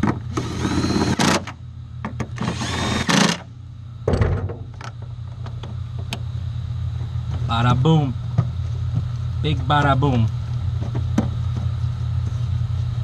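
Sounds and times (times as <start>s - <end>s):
steady low hum: 0.0s - 13.0s
cordless drill whining: 0.3s - 1.5s, 2.4s - 3.4s.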